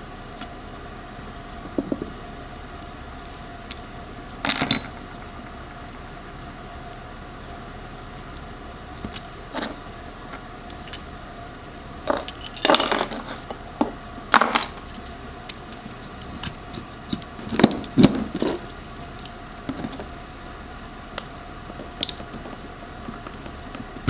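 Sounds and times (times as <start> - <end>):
low background hum: 0.0 - 24.0
small hard parts clinking: 4.4 - 5.5, 12.1 - 15.0.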